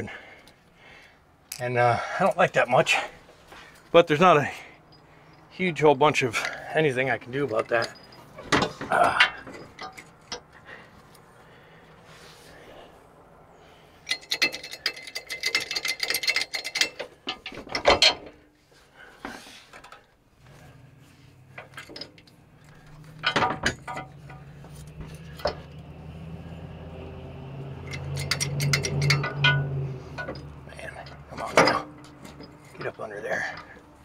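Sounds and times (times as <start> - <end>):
knocks and clanks on metal: 7.4 - 10.6, 14.1 - 18.5, 21.4 - 26.6, 27.6 - 33.8.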